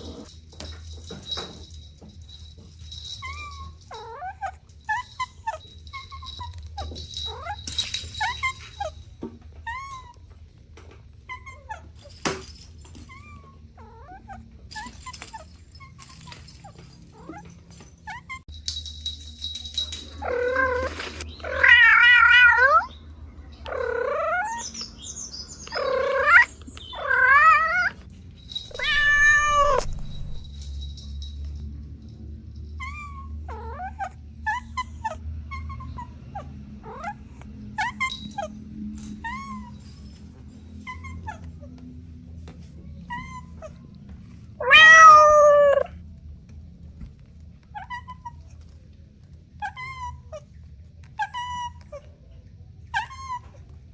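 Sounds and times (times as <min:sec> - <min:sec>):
cats chirping mews: 0:03.0 - 0:10.3, 0:13.0 - 0:18.5, 0:20.1 - 0:30.5, 0:32.8 - 0:39.9, 0:40.8 - 0:41.8, 0:42.9 - 0:46.0, 0:49.6 - 0:53.9
cats meowing: 0:13.0 - 0:15.4, 0:20.2 - 0:23.0, 0:23.6 - 0:24.8, 0:25.6 - 0:28.0, 0:28.6 - 0:30.5, 0:42.9 - 0:46.0, 0:49.6 - 0:53.9.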